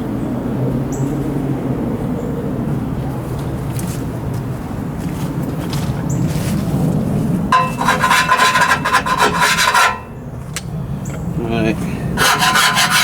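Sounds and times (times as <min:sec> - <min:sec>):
scraping soot off metal: 0:07.5 - 0:10.2, 0:12.1 - 0:13.0.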